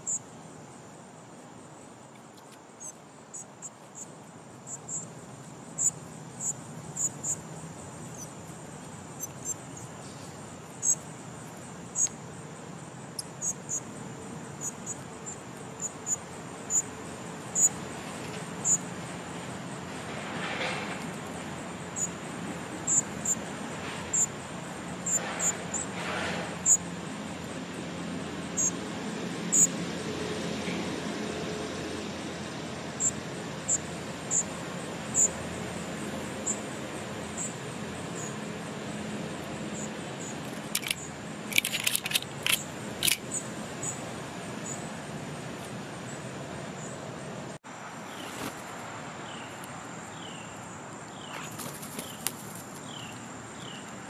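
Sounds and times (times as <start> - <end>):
distant traffic hum: 0.0 - 54.0
sharp clicks: 40.5 - 43.4
songbirds chirping: 49.2 - 54.0.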